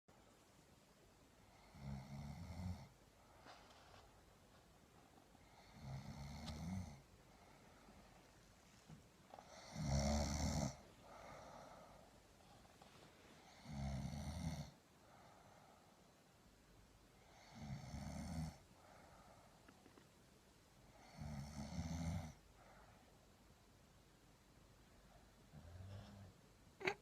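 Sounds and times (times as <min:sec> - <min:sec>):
snoring: 0:01.5 - 0:02.9, 0:05.4 - 0:07.0, 0:09.4 - 0:11.8, 0:13.4 - 0:14.8, 0:17.2 - 0:18.6, 0:20.9 - 0:22.4, 0:25.5 - 0:27.0.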